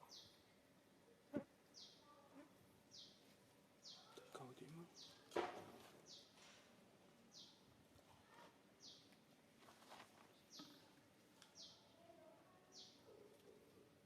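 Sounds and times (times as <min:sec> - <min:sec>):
bird chirping: 0:00.0 - 0:00.5, 0:01.7 - 0:02.0, 0:02.9 - 0:03.2, 0:03.8 - 0:05.3, 0:06.0 - 0:06.4, 0:07.3 - 0:07.6, 0:08.8 - 0:09.2, 0:10.3 - 0:12.0
faint rustling: 0:07.9 - 0:11.5.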